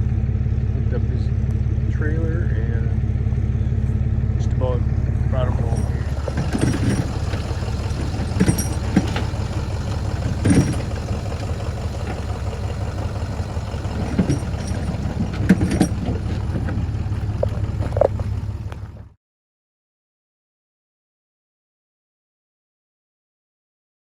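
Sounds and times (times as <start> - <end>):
truck engine droning: 0.0 - 19.2
clanks and rattles: 5.5 - 19.1.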